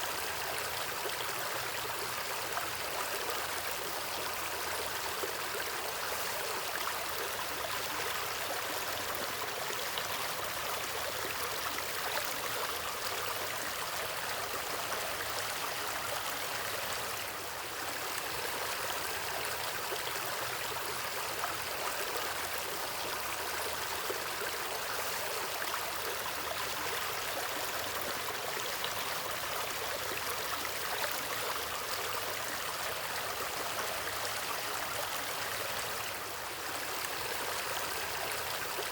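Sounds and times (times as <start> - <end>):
stream water burbling: 0.0 - 38.9.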